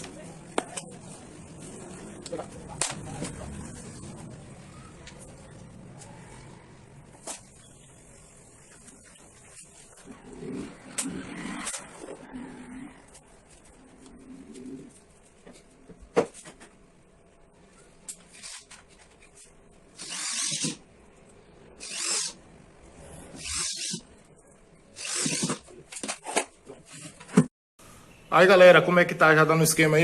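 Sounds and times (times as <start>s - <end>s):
power drill bursts: 20.0s - 20.8s, 21.8s - 22.4s, 25.0s - 25.6s.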